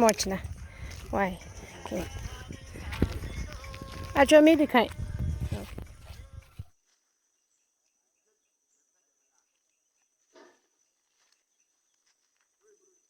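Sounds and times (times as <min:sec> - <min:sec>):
insects chirping: 0:00.0 - 0:13.0.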